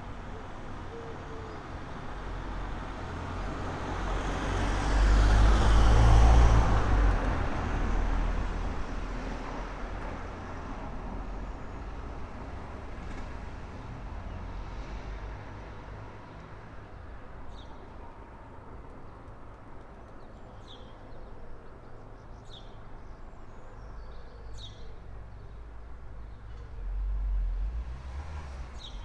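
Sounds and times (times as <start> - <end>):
vehicle passing with deep rumble: 2.6 - 9.9, 25.6 - 29.0.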